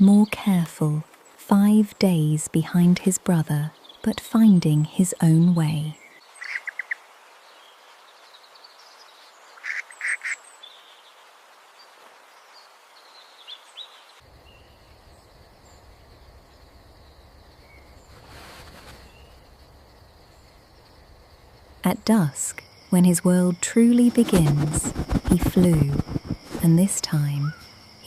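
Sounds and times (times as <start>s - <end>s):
bird calling: 6.0s - 7.0s, 9.6s - 10.4s.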